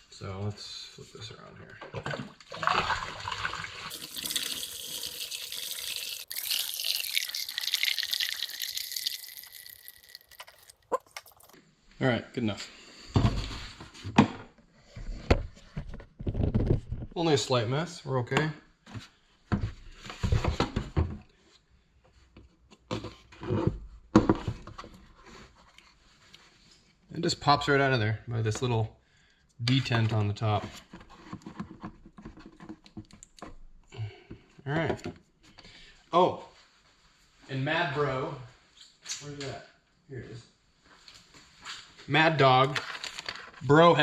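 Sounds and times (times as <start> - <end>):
fluid pouring and splashing: 2.4 - 11.6
plastic scraping and knocking: 13.2 - 17.2, 30.6 - 33.2.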